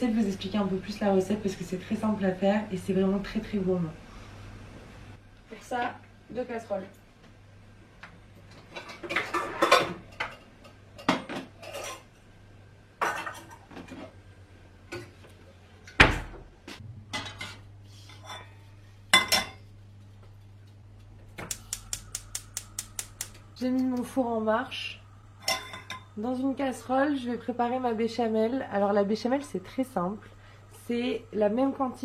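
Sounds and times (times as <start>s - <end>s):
even clicks: 21.4s - 24.1s
saucepans clattering: 25.4s - 26.2s.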